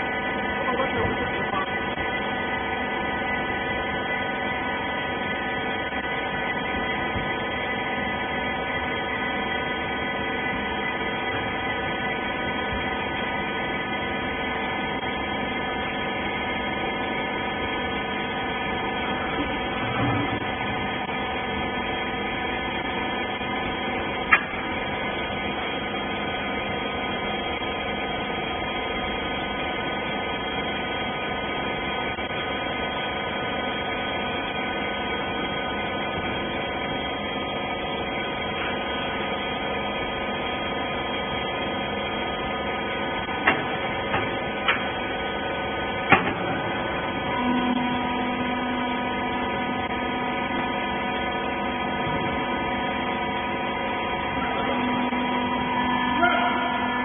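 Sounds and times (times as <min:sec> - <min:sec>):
hydraulic power pack humming: 0:00.0 - 0:57.0
low tone: 0:46.1 - 0:50.7, 0:51.8 - 0:57.0.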